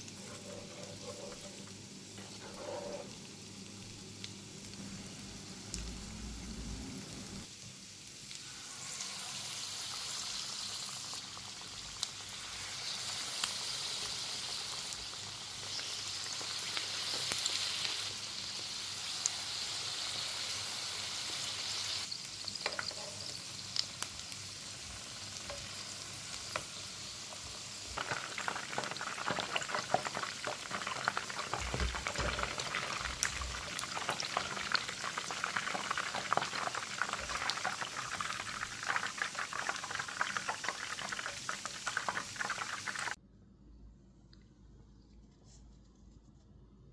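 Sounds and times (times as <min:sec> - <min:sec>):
food sizzling in a frying pan: 0:00.0 - 0:43.2.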